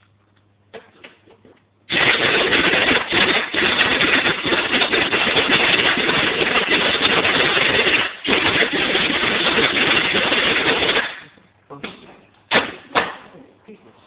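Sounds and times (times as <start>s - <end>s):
power tool running: 1.9s - 11.3s.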